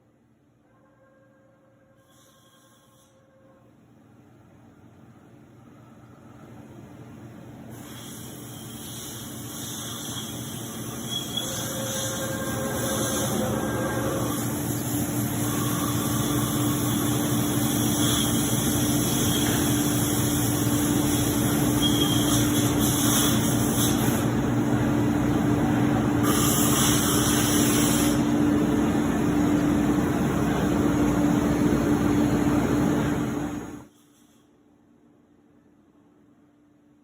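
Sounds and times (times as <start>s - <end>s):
machining center humming: 10.9s - 22.9s, 24.2s - 33.9s.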